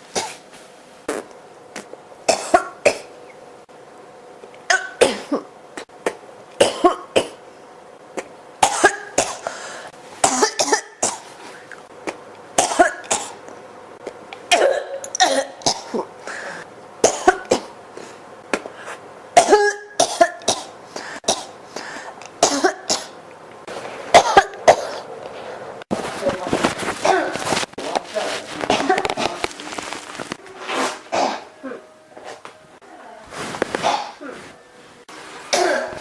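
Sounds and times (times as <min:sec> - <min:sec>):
person coughing: 0:02.3 - 0:03.1, 0:04.7 - 0:05.5, 0:06.6 - 0:07.4, 0:08.6 - 0:09.6, 0:10.2 - 0:11.2, 0:12.6 - 0:13.4, 0:14.5 - 0:17.8, 0:19.4 - 0:23.2, 0:24.1 - 0:25.1, 0:26.8 - 0:27.6, 0:31.1 - 0:31.9, 0:33.7 - 0:34.5, 0:35.5 - 0:36.0.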